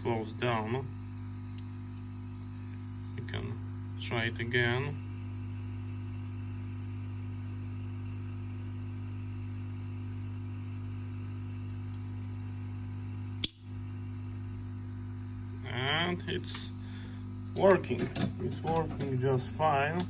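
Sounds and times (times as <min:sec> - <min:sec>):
electrical hum: 0:00.0 - 0:20.0
sharp click: 0:13.4 - 0:13.7.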